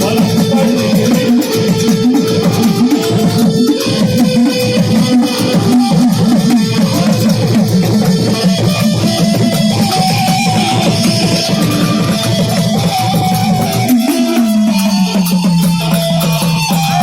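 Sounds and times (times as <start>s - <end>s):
rhythmic drum accompaniment: 0.0s - 17.0s.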